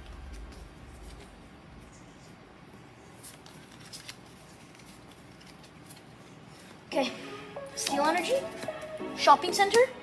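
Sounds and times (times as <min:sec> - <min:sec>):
cards snapping: 0:03.2 - 0:06.7.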